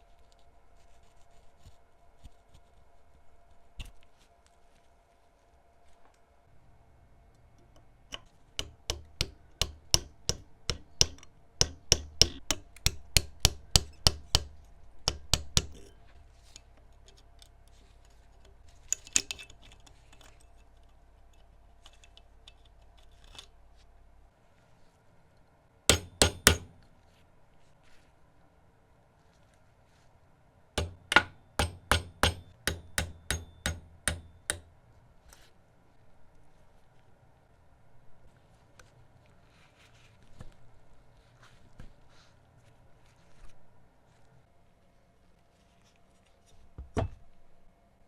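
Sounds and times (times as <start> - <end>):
hammer tapping: 7.6 - 16.0, 25.9 - 26.9, 30.8 - 34.7.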